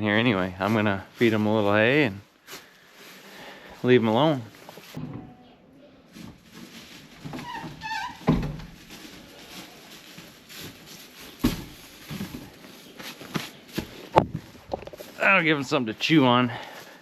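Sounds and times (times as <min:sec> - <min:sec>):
dull thumps: 0:11.4 - 0:12.5.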